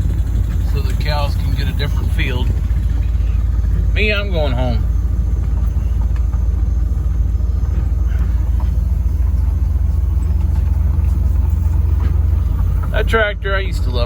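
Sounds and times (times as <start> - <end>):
tractor engine rumbling: 0.0 - 14.0.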